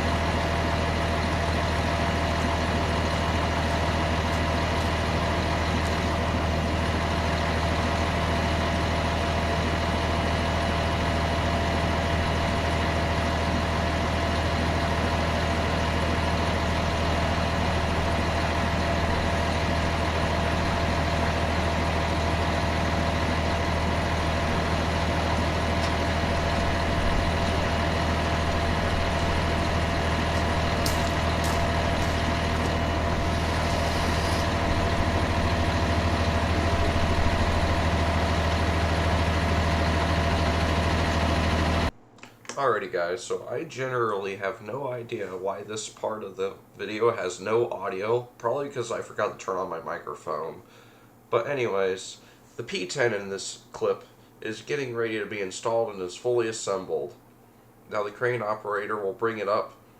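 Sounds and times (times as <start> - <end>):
truck engine idling: 0.0 - 42.0.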